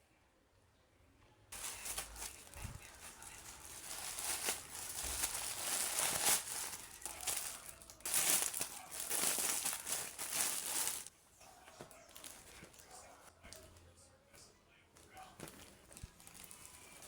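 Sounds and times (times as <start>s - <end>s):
crinkling and rustling: 1.5s - 13.8s, 15.0s - 17.0s.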